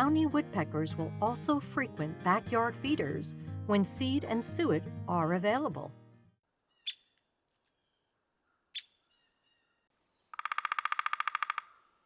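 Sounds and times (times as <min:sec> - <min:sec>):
woodpecker pik calls: 0:06.7 - 0:07.2, 0:07.8 - 0:09.7, 0:10.3 - 0:12.0
woodpecker drumroll: 0:10.3 - 0:11.8.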